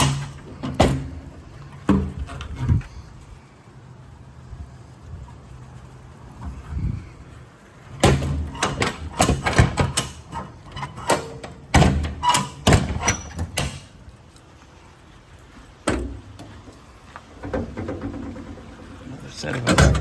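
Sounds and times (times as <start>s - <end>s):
metal clanks and bangs: 0.0s - 2.6s, 8.0s - 14.0s, 17.4s - 20.0s.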